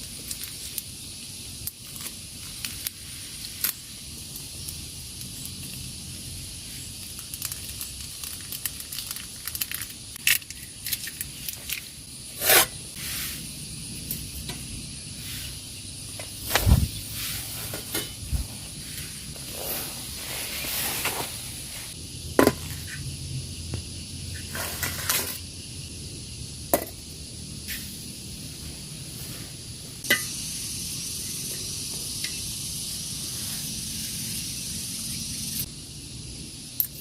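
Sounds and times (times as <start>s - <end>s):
campfire hissing and crackling: 0.0s - 22.9s, 23.8s - 37.0s
loud scrape: 12.4s - 13.4s.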